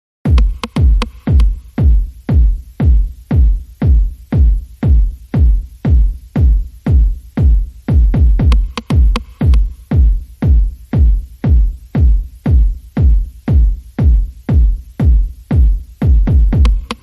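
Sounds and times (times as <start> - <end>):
electronic dance music: 0.3 - 17.0
heavy kick drum beat: 0.3 - 17.0.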